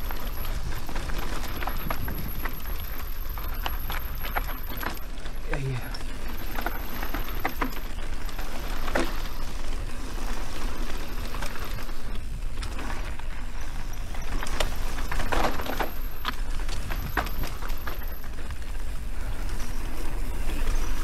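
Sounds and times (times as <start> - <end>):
wind rumble on microphone: 0.0 - 4.9
bike rattling and clicking: 0.0 - 21.0.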